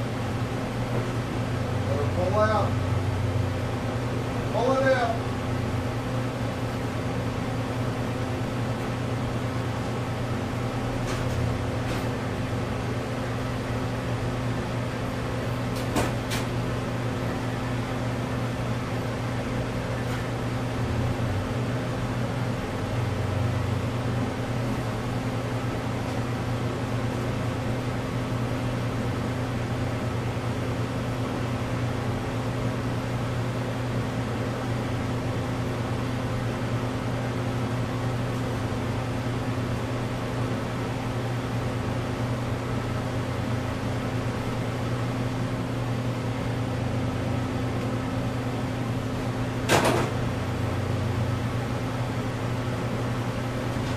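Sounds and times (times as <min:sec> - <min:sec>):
low mechanical hum: 0:00.0 - 0:53.9.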